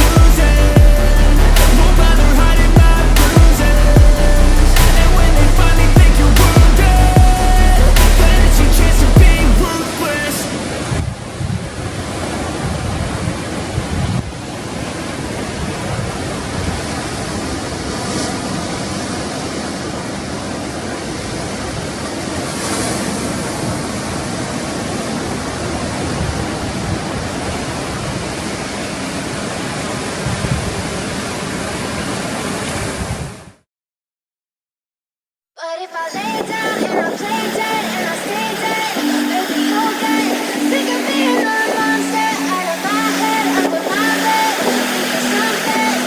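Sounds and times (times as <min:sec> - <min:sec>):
ocean surf breaking: 0:00.0 - 0:33.1, 0:36.0 - 0:46.0
wind rumbling on microphone: 0:10.6 - 0:28.6, 0:30.1 - 0:31.4, 0:32.7 - 0:33.5, 0:36.2 - 0:45.9.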